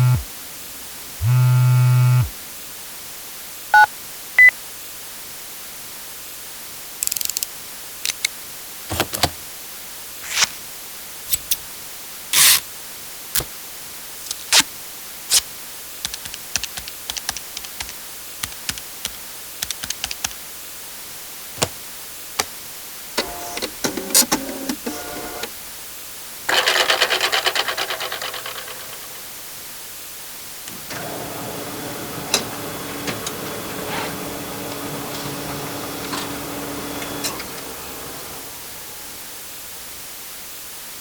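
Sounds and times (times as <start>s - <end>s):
electronic telephone beeps: 1.2s - 2.3s, 3.8s - 4.5s
office supply clicks and snaps: 12.4s - 12.6s.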